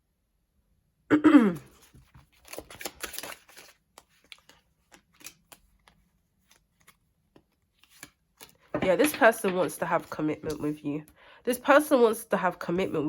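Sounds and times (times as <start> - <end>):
cards being shuffled: 1.7 - 10.8
papery rustles and clicks: 1.7 - 10.8.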